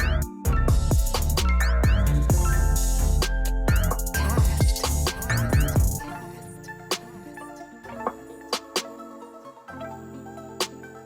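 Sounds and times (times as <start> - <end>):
hip hop music with deep bass: 0.0 - 11.0.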